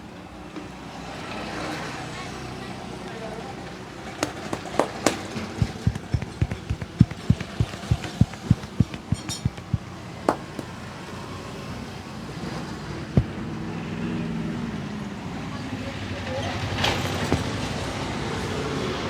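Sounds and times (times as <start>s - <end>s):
street traffic: 2.2s - 19.0s
sharp clicks: 4.2s - 9.8s
hands slapping in massage: 4.2s - 10.8s.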